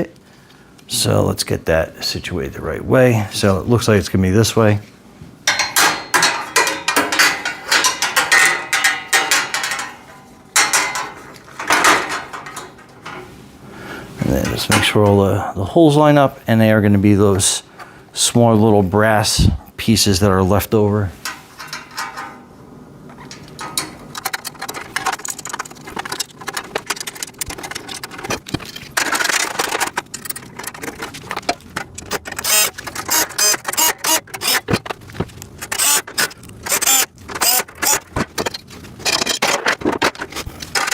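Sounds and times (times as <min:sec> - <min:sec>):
metal parts knocking and clinking: 0:05.4 - 0:13.4, 0:21.2 - 0:22.5, 0:23.1 - 0:40.9.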